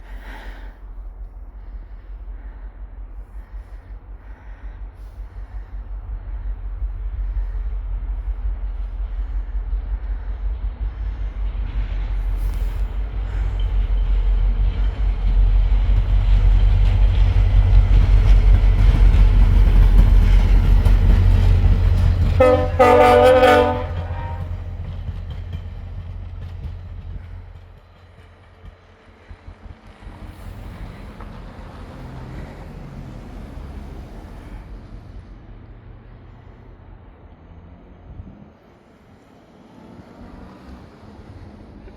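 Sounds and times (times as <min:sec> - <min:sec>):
diesel train rumbling past: 0:00.0 - 0:41.9
train air horn blast: 0:22.2 - 0:24.8.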